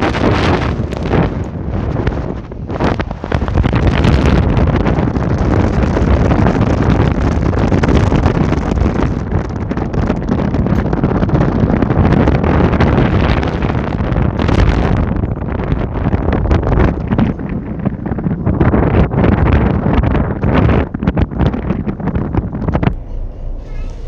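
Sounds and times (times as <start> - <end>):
wind buffeting microphone: 0.0 - 24.0
boat engine running: 22.9 - 24.0.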